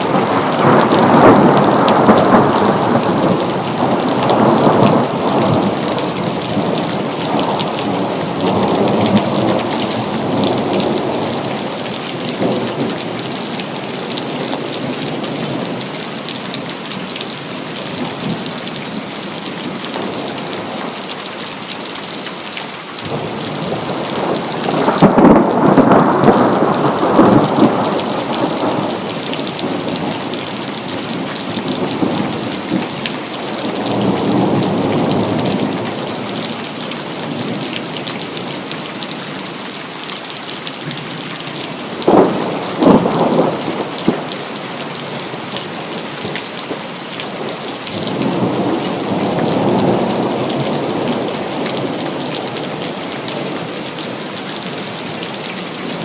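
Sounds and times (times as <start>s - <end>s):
thunder rumbling: 0.0s - 13.6s, 23.1s - 36.6s, 41.8s - 45.9s
steady rain: 0.0s - 56.0s.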